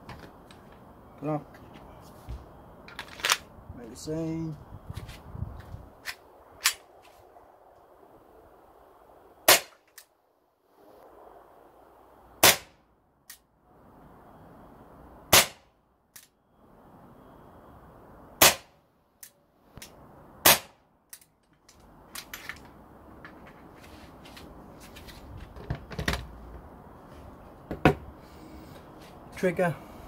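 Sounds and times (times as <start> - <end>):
pellet pistol shots: 9.5 - 9.8, 12.4 - 12.7, 15.3 - 15.6, 18.4 - 18.7, 20.4 - 20.8
handling knocks and rustling: 21.6 - 26.7.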